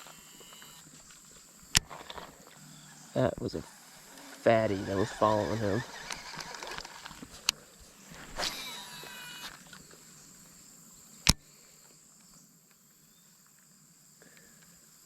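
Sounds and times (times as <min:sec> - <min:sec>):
fishing reel spool whine: 0:00.0 - 0:10.3
high insect drone: 0:00.0 - 0:15.0
sharp reel click: 0:03.7 - 0:07.6, 0:08.2 - 0:09.8.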